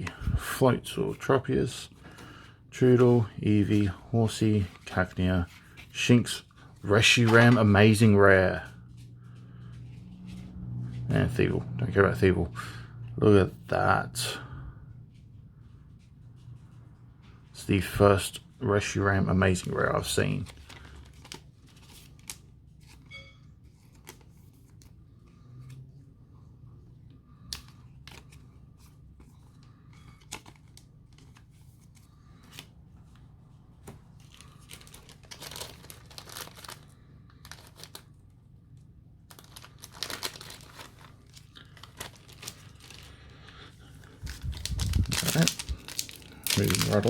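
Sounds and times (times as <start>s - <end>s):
cards and packaging crinkling: 0.0s - 10.3s, 18.8s - 25.9s, 27.4s - 32.8s, 33.7s - 47.0s.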